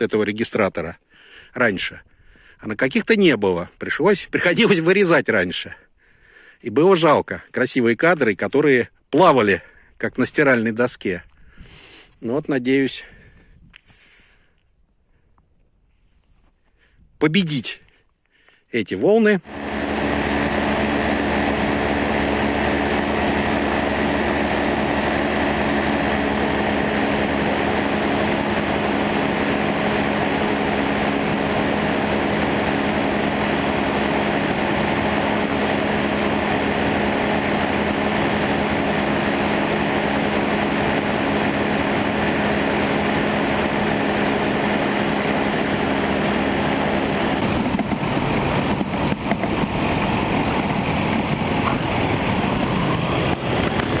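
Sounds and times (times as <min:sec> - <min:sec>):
engine and propeller running: 0:04.4 - 0:05.2, 0:19.3 - 0:54.0.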